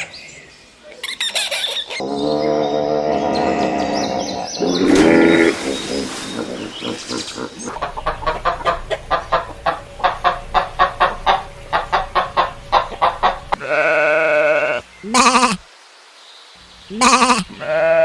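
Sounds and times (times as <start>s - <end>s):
chickens clucking: 4.7s - 13.6s.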